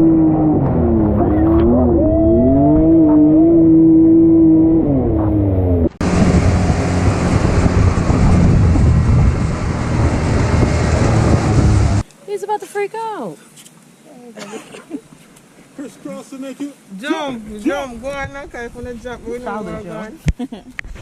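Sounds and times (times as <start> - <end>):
atv engine revving: 0.0 - 12.0
loud rushing noise: 6.0 - 12.0.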